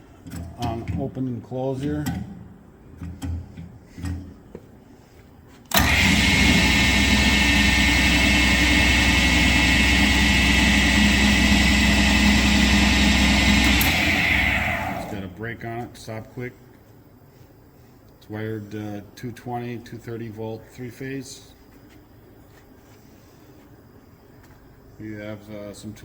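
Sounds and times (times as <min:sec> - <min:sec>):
lathe motor whining: 0:05.7 - 0:15.3.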